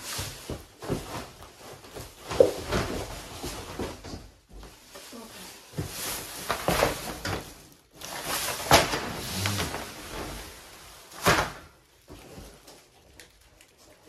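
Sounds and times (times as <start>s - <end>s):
cardboard packaging rustling: 0.0s - 13.9s.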